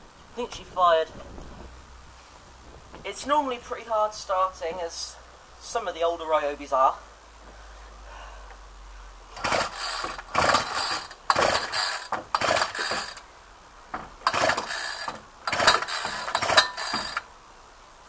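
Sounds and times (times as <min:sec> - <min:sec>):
recoil pull-starter yanked: 0:09.4 - 0:13.2, 0:13.9 - 0:17.3.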